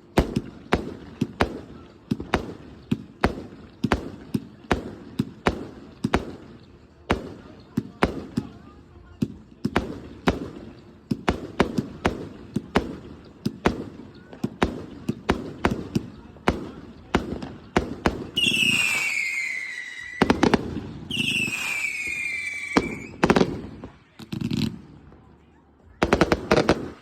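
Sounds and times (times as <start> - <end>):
firework crackling: 0.0 - 25.2, 26.0 - 27.0
firework bangs: 0.0 - 25.3, 26.0 - 27.0
whistling firework shells: 9.9 - 24.7.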